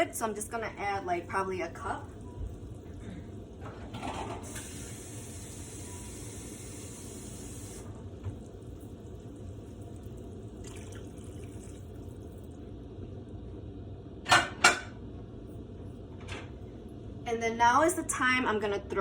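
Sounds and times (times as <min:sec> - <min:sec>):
water running from tap: 0:04.4 - 0:12.6.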